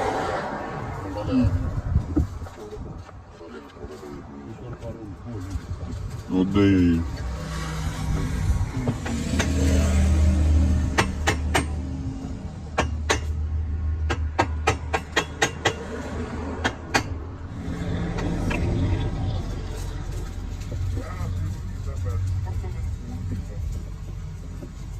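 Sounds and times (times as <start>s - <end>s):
sharp knocks: 10.9s - 11.8s, 12.7s - 13.4s, 14.0s - 15.9s, 16.6s - 17.2s.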